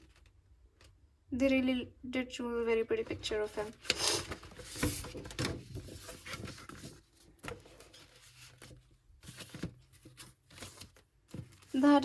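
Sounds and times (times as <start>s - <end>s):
paper rustling: 3.0s - 12.0s.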